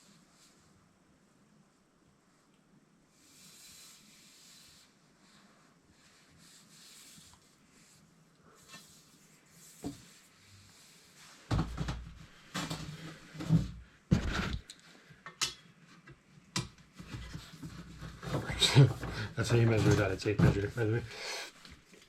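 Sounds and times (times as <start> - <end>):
rubbing and scraping handling: 16.9 - 22.0.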